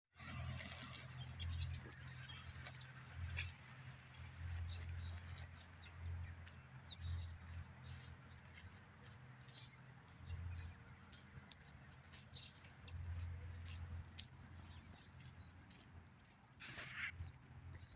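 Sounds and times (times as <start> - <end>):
small birds chirping: 0.2 - 17.9.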